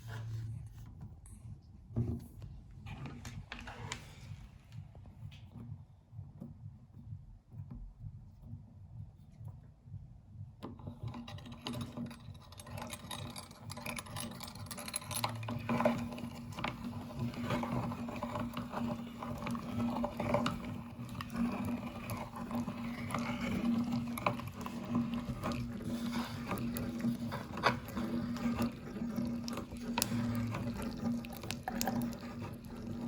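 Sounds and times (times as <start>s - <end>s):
crackling and clicking in grinder: 10.9s - 33.0s
meat grinder humming: 14.7s - 33.0s.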